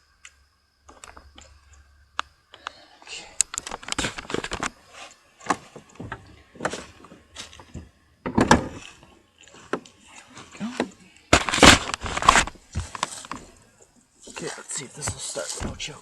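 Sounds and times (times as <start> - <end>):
knocks and clunks of handling: 5.4 - 9.0, 10.7 - 13.5.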